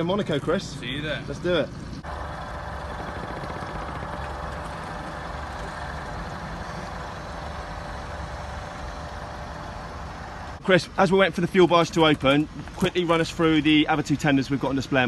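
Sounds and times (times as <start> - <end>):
boat engines running: 0.0 - 10.6
faint steady whine: 0.0 - 15.0.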